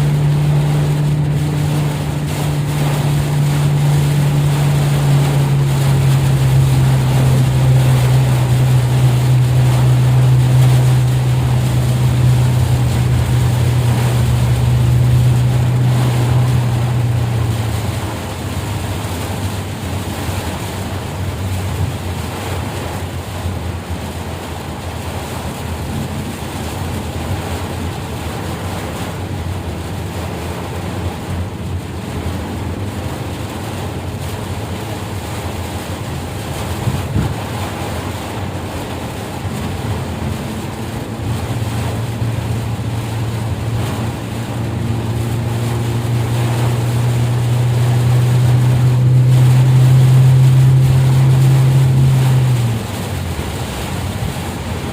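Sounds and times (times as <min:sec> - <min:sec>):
constant rushing noise: 0:00.0 - 0:54.9
vehicle engine running: 0:00.0 - 0:54.9.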